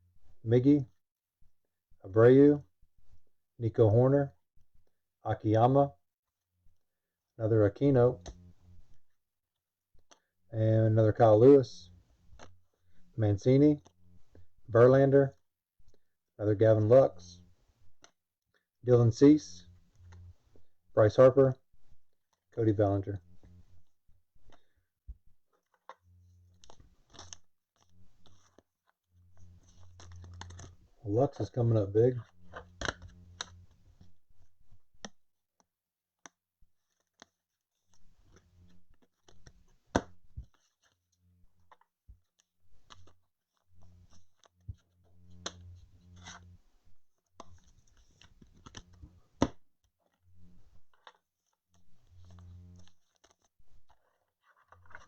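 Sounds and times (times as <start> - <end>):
low steady hum: 29.2 - 35.0.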